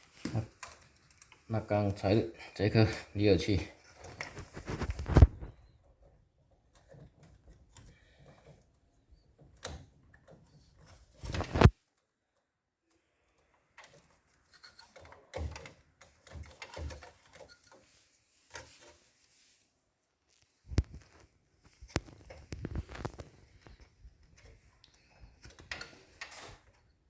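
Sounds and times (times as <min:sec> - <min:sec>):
plastic and metal parts clicking: 0:20.7 - 0:26.9.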